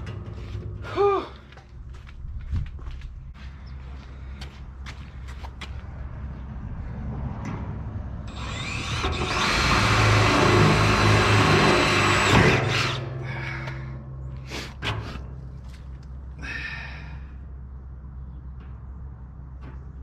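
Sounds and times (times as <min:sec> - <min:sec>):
power drill whining: 0:08.3 - 0:13.3.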